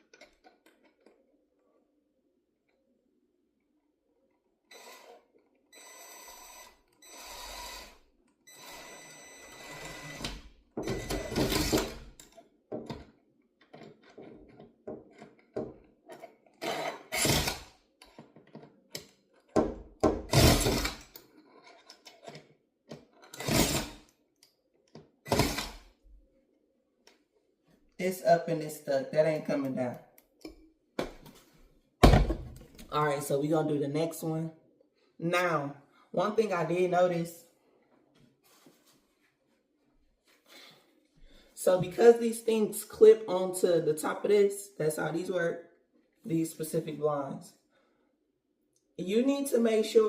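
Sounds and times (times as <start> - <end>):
cordless drill whining: 4.7 - 5.2, 5.8 - 12.0, 16.6 - 17.7, 20.3 - 21.1, 23.3 - 24.0, 25.3 - 25.8
loud knocks and thuds: 32.0 - 32.7.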